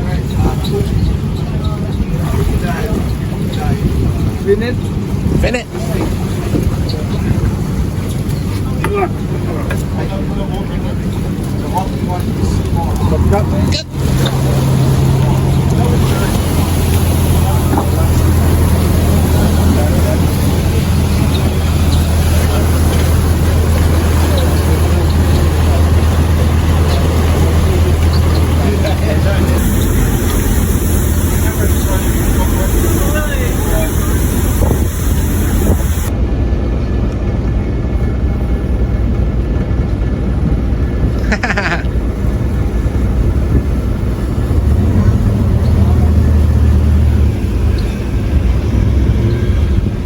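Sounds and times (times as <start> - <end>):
boat engine humming: 0.0 - 50.0
wash of noise: 10.2 - 36.4.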